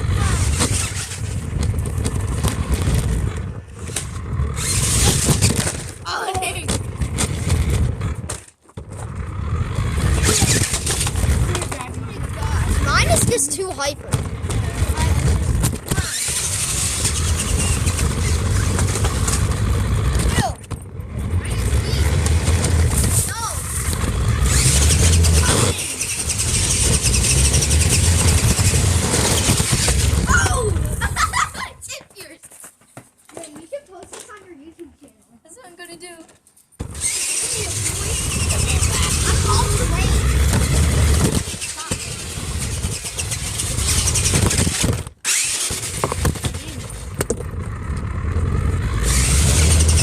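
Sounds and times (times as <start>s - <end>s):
electric motors and gears whirring: 0.0s - 31.6s, 36.8s - 50.0s
tyres rushing over ground: 0.0s - 34.8s, 36.3s - 50.0s
rapid fine ticking: 21.0s - 30.3s.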